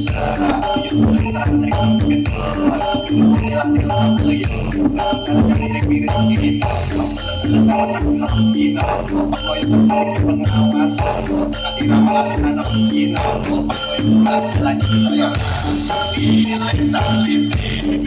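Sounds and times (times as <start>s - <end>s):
loud remixed dance music: 0.0s - 18.0s.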